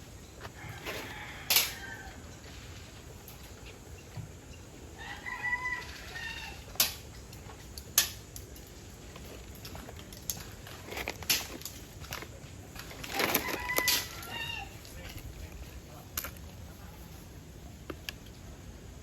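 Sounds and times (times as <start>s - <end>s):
rooster crowing: 0.5s - 2.4s, 5.0s - 6.7s, 13.1s - 14.8s.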